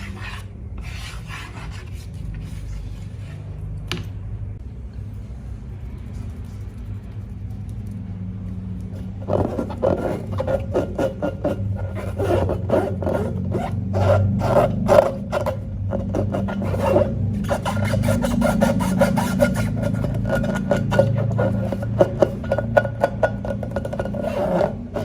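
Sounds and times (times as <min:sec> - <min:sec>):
wet scraping of slime: 0:08.9 - 0:25.0.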